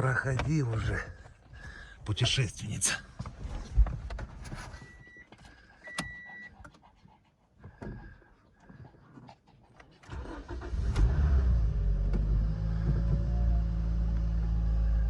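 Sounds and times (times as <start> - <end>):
car engine starting and idling: 9.8 - 15.0.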